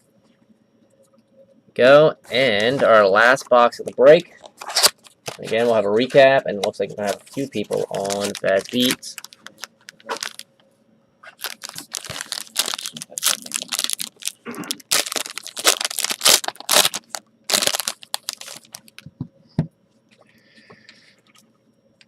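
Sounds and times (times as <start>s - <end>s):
plastic wrap tearing and crinkling: 4.6s - 5.6s, 6.9s - 10.5s, 11.2s - 19.0s.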